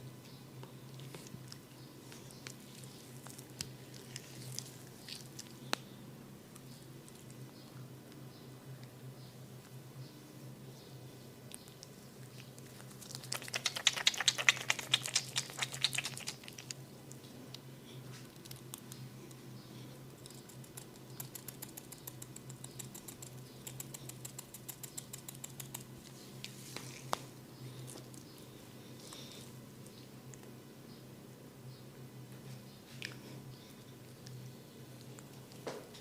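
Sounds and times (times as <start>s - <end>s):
fingers scratching through hair: 12.8s - 16.7s, 20.2s - 25.9s.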